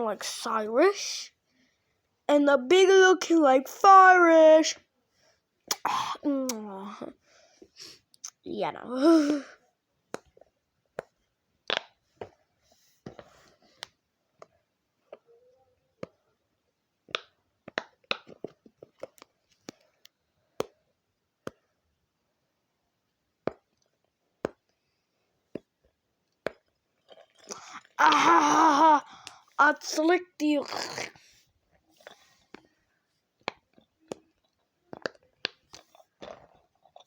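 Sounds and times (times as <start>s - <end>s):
fidget toys clicking and popping: 10.1s - 12.4s, 17.0s - 21.6s, 29.1s - 31.2s, 33.4s - 37.0s.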